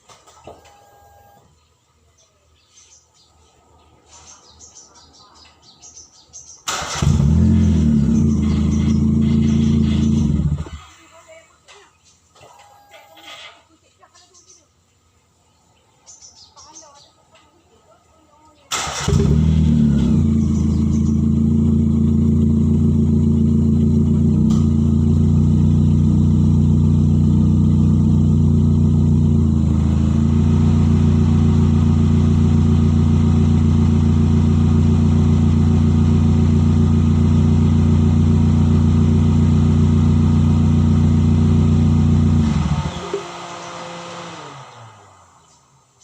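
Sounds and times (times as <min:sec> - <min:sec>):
vehicle engine with leaking exhaust: 0:06.6 - 0:11.4, 0:18.7 - 0:46.0.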